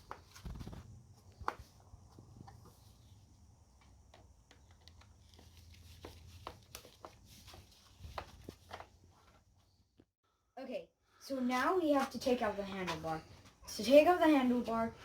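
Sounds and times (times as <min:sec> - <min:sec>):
faint clicks and taps: 0:03.7 - 0:07.2.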